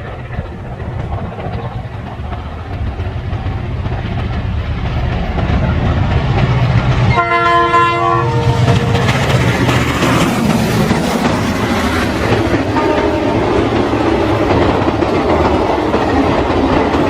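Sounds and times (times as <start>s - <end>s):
train rumbling: 0.0s - 17.0s
locomotive horn chord: 7.1s - 9.0s, 12.8s - 13.4s.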